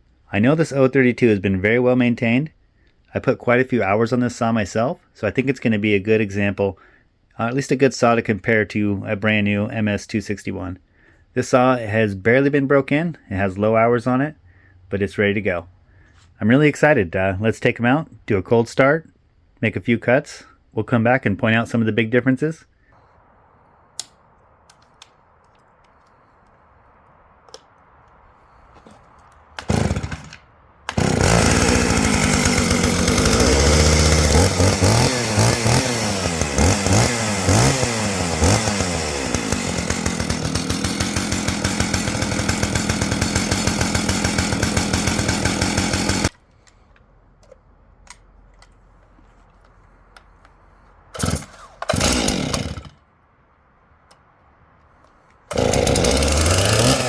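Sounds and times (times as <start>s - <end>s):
chainsaw engine running: 29.6s - 46.3s, 51.2s - 53.0s, 55.5s - 57.0s.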